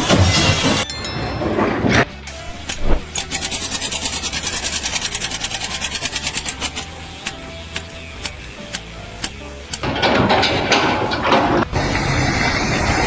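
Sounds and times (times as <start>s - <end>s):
rapid rhythmic rasping: 1.9s - 11.8s
scattered clicks: 2.2s - 12.0s.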